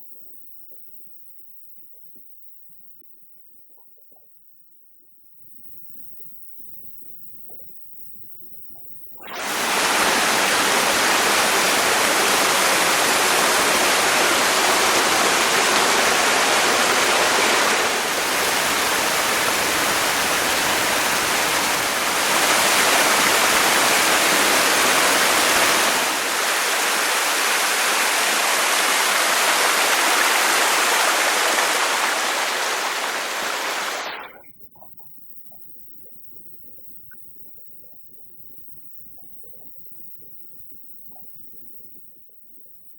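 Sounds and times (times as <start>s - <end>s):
waterfall rushing: 9.3s - 34.3s.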